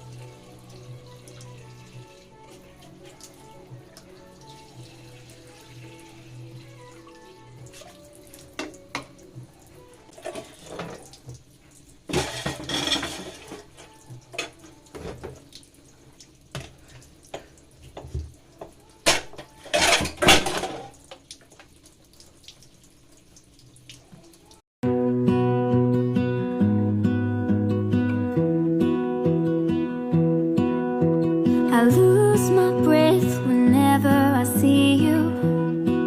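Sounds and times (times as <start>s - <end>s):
dishes and cutlery clinking: 8.5s - 9.2s, 10.1s - 11.1s, 12.1s - 15.5s, 16.5s - 21.0s.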